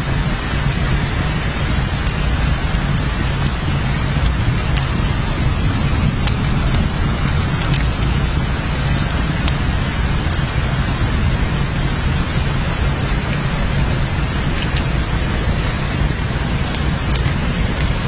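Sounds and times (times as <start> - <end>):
sharp clicks of raindrops: 0.0 - 18.0
steady rain: 0.0 - 18.0.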